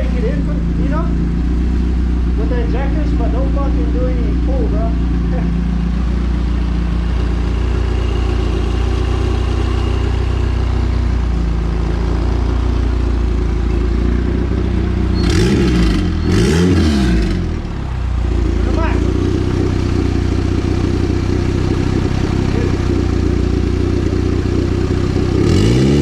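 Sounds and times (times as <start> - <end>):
car engine idling: 0.0 - 26.0
engine revving blips: 13.6 - 18.9, 25.2 - 26.0.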